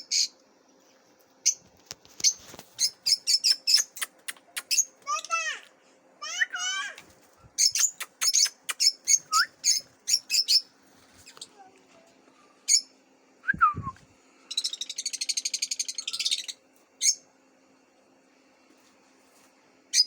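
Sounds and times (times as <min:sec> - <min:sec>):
lovebirds chirping: 0:02.2 - 0:05.4, 0:07.6 - 0:11.6
fast chattering bird trill: 0:07.6 - 0:10.7.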